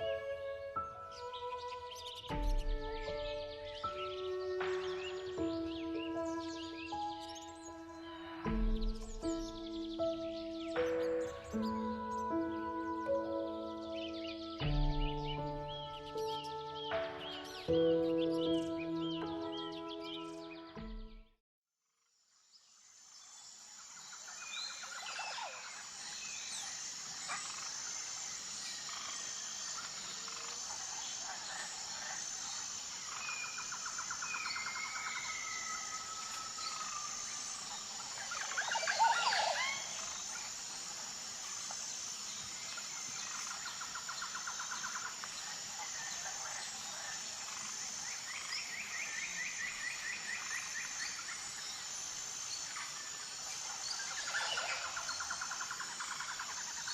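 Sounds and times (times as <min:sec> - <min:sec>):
birds calling with trills: 0:00.0 - 0:20.9, 0:24.2 - 0:56.9.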